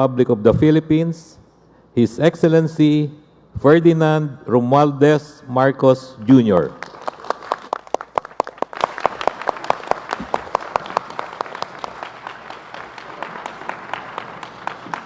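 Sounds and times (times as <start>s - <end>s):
audience applauding: 6.8s - 15.0s
nearby sharp claps: 6.8s - 15.0s.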